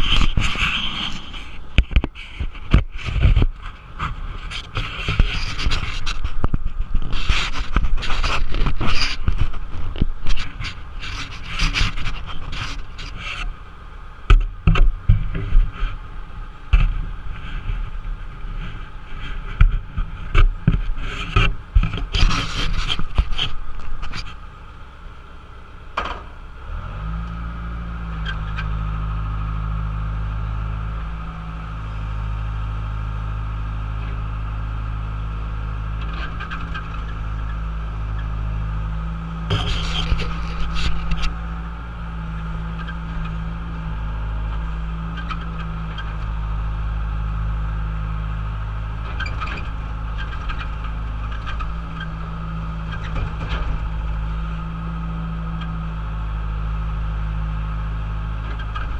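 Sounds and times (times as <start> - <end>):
excavator knocks and scraping: 0.0 - 13.4, 16.7 - 24.4, 25.9 - 27.1, 49.0 - 54.8
diesel engine droning: 0.0 - 58.9.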